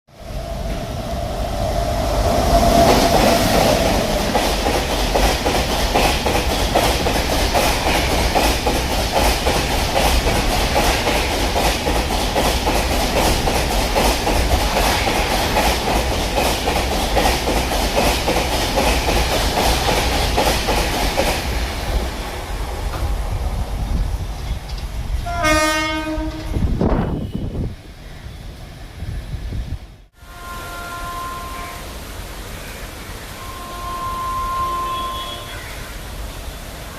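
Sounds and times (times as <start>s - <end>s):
train wheels clattering over rail joints: 2.7s - 22.1s
train horn: 25.2s - 27.6s, 30.2s - 32.1s, 33.3s - 35.9s.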